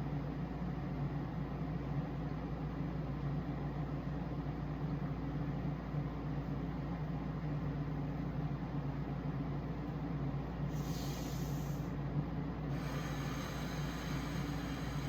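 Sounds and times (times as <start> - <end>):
low mechanical hum: 0.0 - 15.0
short breathy hiss: 10.7 - 11.9, 12.7 - 15.0.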